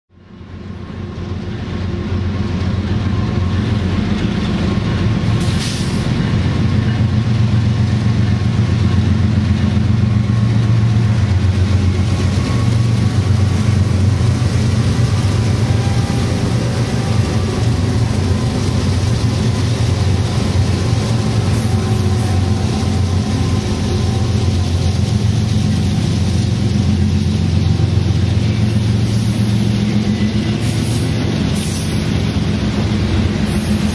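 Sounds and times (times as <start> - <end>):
diesel locomotive engine drone: 0.1 - 33.9
train rattling: 0.2 - 33.9
short hiss: 5.4 - 6.1.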